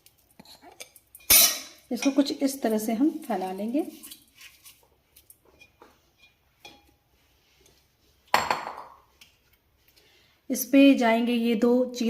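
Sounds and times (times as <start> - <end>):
metal spoon clinking on pot: 0.7 - 2.3, 5.6 - 7.0.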